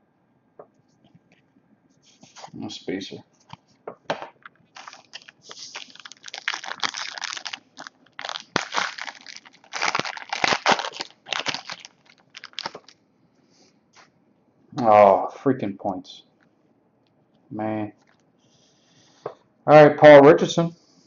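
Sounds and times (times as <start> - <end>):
foil wrapper crinkling: 4.7 - 13.0.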